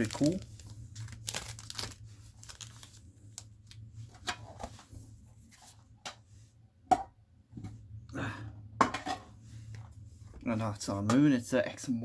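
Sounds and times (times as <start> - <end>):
wrapper and card clicks: 0.0 - 3.0
foil packs crinkling: 0.0 - 3.8.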